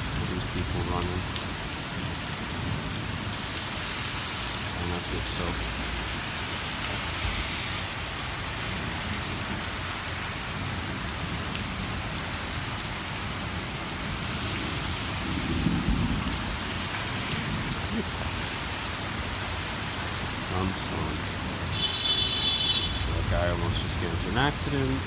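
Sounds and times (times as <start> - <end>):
rain on hard surfaces: 0.0 - 25.0.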